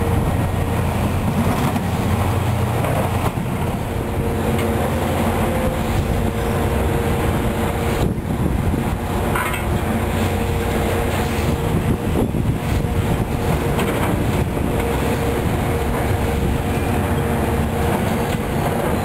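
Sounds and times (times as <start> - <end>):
diesel machinery running: 0.0 - 19.0
metal clanks and scraping: 9.3 - 10.4.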